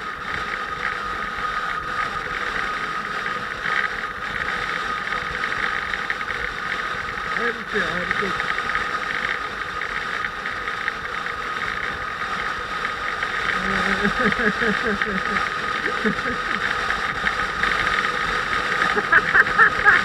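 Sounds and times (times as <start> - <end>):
motorcycle engine running: 0.0 - 20.0
indistinct voices: 13.5 - 16.7.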